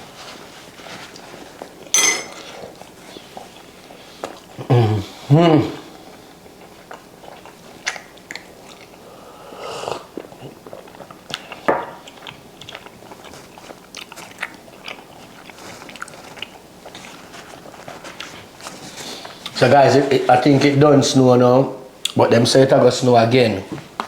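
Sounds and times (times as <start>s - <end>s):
person chewing and eating: 6.4s - 9.1s, 10.0s - 19.5s.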